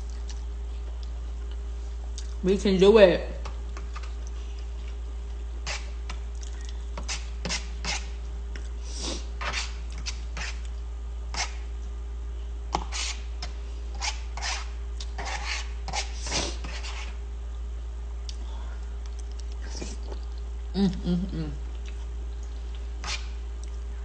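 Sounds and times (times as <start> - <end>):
chewing smacks: 0.0 - 2.4, 19.0 - 20.5
steady low hum: 0.0 - 24.0
utensil on a plate: 5.6 - 6.2, 9.1 - 11.7, 12.8 - 17.2, 23.0 - 23.4.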